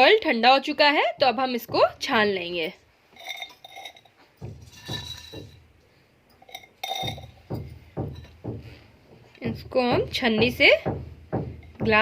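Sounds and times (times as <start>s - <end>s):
glassware and utensils clinking: 3.1s - 5.6s, 6.3s - 7.6s.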